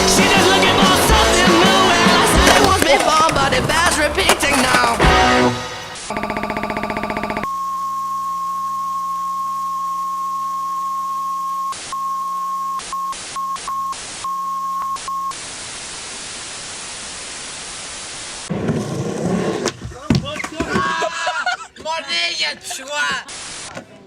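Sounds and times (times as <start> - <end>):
high electronic test tone: 6.1 - 15.4
static hiss: 11.6 - 12.0, 12.6 - 18.5, 23.2 - 23.8.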